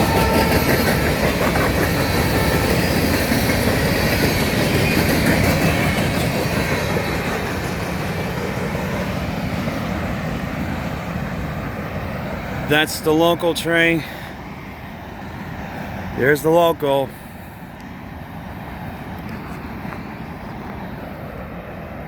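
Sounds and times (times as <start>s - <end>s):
clickety-clack over rail joints: 0.0s - 10.1s
freight train rolling on rails: 0.0s - 22.0s.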